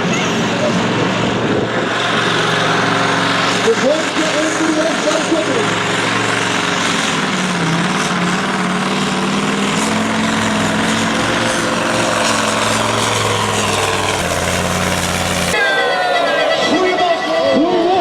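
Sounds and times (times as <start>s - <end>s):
truck engine running hard: 0.0s - 18.0s.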